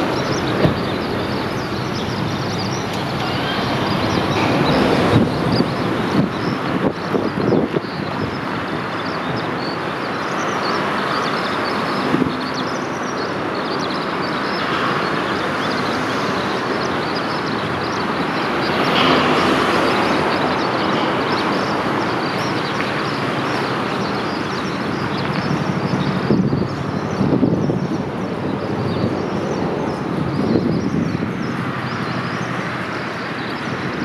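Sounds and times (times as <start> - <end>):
river flowing: 0.0 - 7.1.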